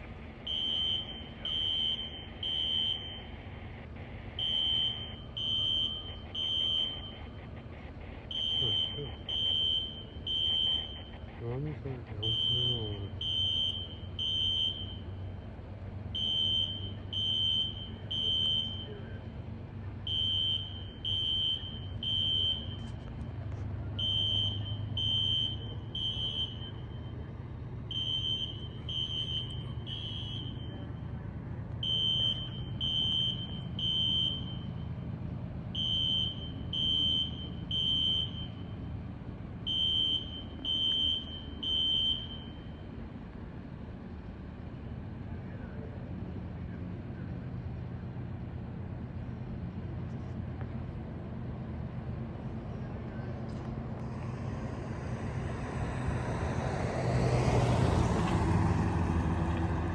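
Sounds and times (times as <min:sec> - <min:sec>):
low engine rumble: 0:00.0 - 0:59.9
fire alarm beeping: 0:00.4 - 0:03.5, 0:04.3 - 0:07.2, 0:08.3 - 0:11.2, 0:12.2 - 0:15.1, 0:16.2 - 0:19.0, 0:20.1 - 0:22.9, 0:24.0 - 0:27.2, 0:27.9 - 0:30.9, 0:31.8 - 0:34.8, 0:35.8 - 0:38.6, 0:39.7 - 0:42.8.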